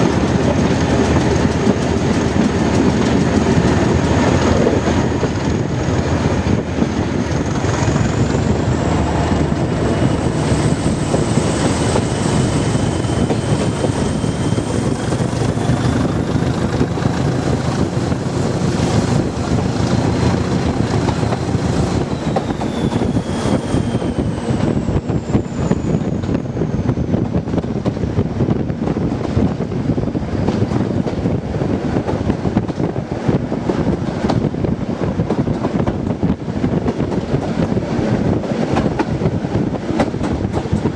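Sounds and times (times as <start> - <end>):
diesel train rumbling: 0.0 - 40.9
train whine: 0.0 - 40.9
wind buffeting microphone: 0.0 - 40.9.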